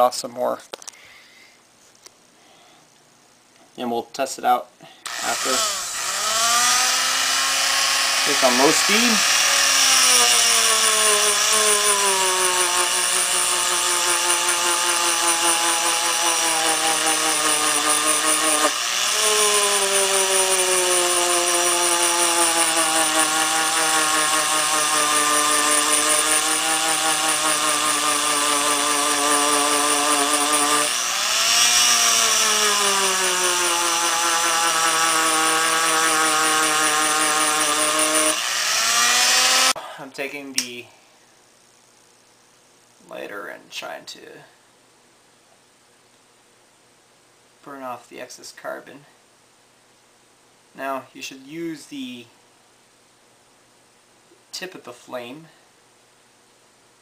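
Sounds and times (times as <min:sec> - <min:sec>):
rotary tool motor whine: 0:05.1 - 0:39.8.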